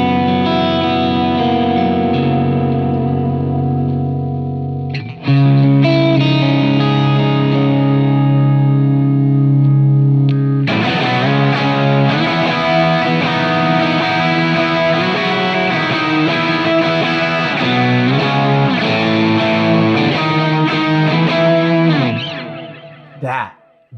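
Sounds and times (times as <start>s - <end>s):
electric guitar chords with delay: 0.0s - 23.9s.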